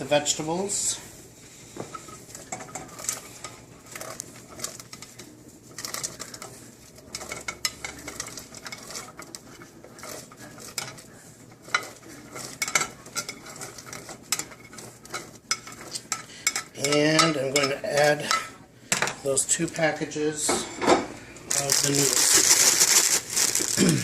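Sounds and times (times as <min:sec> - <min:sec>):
utensil clinking and scraping: 0:01.9 - 0:18.5, 0:21.5 - 0:23.9.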